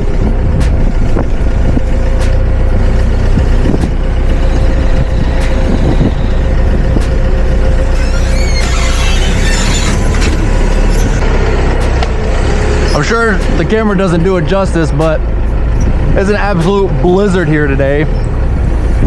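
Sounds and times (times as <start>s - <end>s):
forklift engine whining: 0.0s - 19.0s
high metallic squeal: 3.0s - 11.2s.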